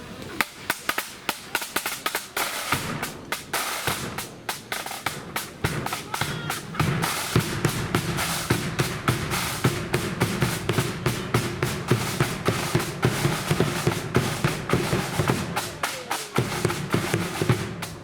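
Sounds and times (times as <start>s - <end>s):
rapid snare drum strokes: 0.3s - 18.0s
bass drum: 5.1s - 15.6s.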